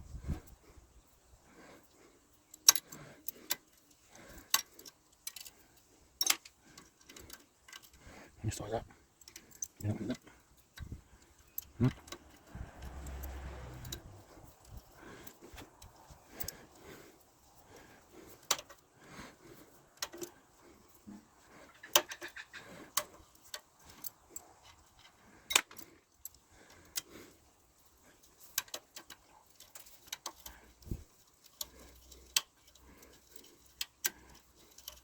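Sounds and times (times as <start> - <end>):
metal tools clinking on brass: 9.2 - 16.5.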